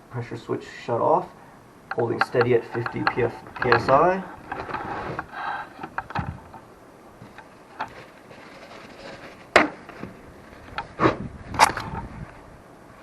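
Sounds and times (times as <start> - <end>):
knocks and clicks: 1.9 - 6.6.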